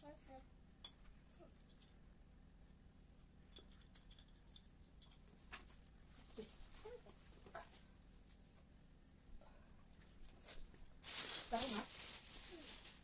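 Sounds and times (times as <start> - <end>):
ornaments and branches rustling: 3.0 - 13.0.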